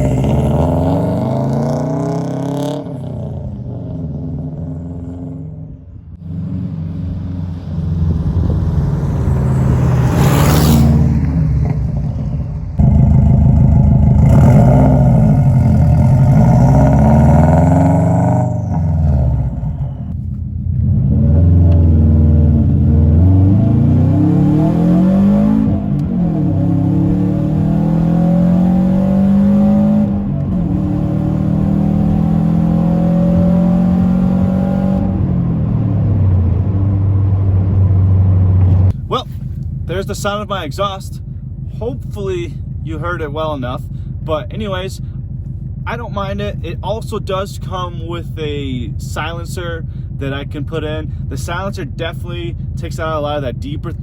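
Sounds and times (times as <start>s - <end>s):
loud car engine revving: 0.0s - 39.0s.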